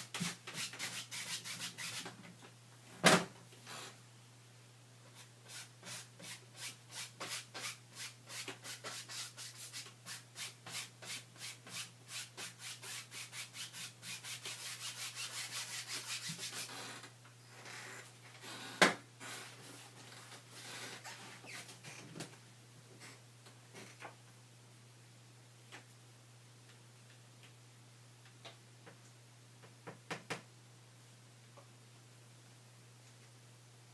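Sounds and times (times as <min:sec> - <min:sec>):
rubbing strokes across a surface: 0:00.0 - 0:02.1, 0:05.2 - 0:16.9.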